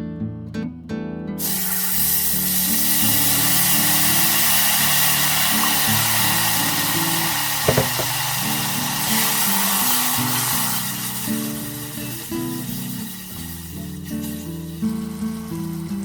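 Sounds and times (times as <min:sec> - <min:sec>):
acoustic guitar music: 0:00.0 - 0:16.0
food sizzling in a hot pan: 0:01.4 - 0:16.0
short knocks: 0:07.7 - 0:08.2.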